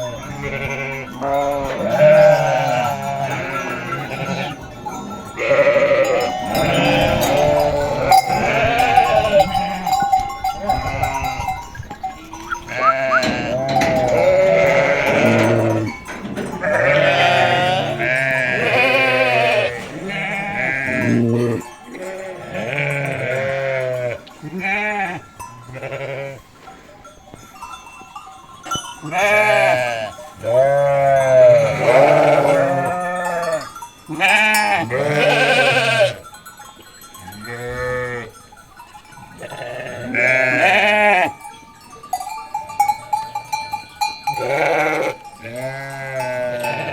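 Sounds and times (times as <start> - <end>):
sheep bleating: 0.0 - 10.0, 12.5 - 26.4, 29.1 - 36.2, 39.4 - 41.3, 44.3 - 46.9.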